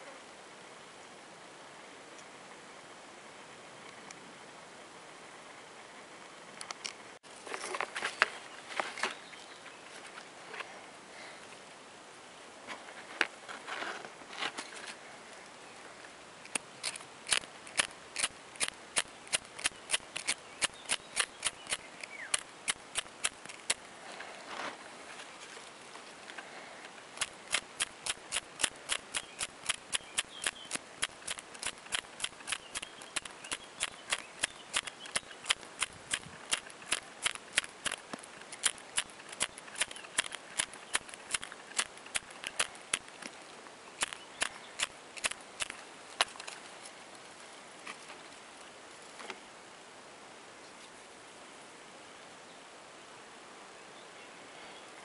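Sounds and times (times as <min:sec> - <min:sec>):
blade scraping dry tinder: 0:27.2 - 0:43.2.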